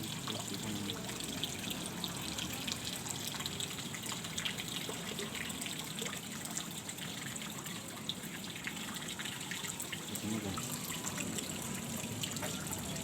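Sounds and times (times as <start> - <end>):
stream water trickling: 0.0 - 13.0.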